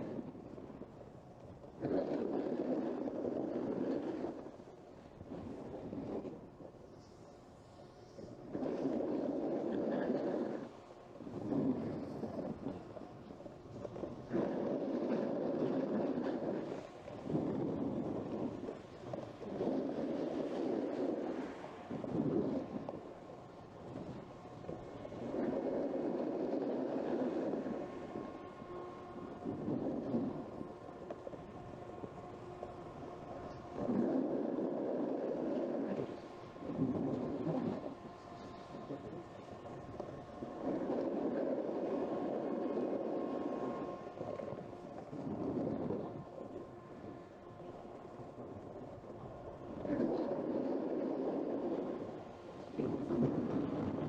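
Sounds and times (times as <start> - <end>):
snowboard scraping over snow: 8.4 - 10.7, 13.7 - 18.8, 19.4 - 22.8, 24.6 - 28.5, 33.8 - 38.0, 40.6 - 44.6, 49.8 - 52.2.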